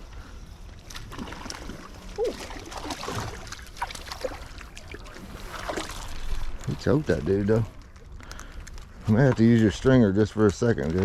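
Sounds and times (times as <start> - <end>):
river water running: 0.8 - 7.0.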